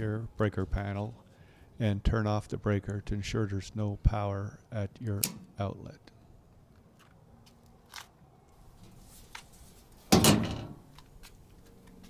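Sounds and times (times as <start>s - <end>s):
breaker metallic clunk: 10.1s - 11.0s.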